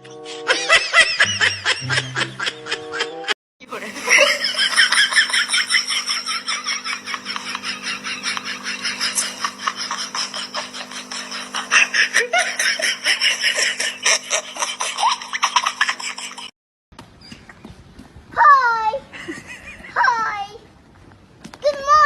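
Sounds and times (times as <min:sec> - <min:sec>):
high-pitched giggling: 0:00.4 - 0:16.5.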